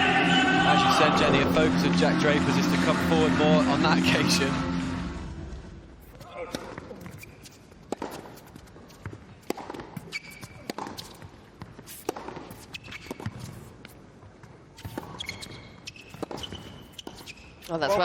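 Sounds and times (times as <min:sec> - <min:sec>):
shoes squeaking on court: 0:06.0 - 0:18.0
tennis ball hit with racquets: 0:06.5 - 0:13.9, 0:14.8 - 0:17.7.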